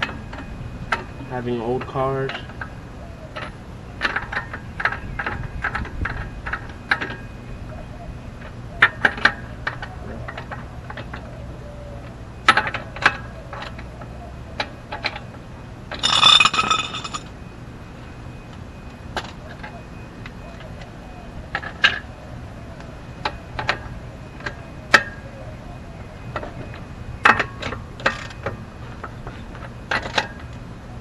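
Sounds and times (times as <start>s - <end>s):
metallic rattle: 14.9s - 17.3s.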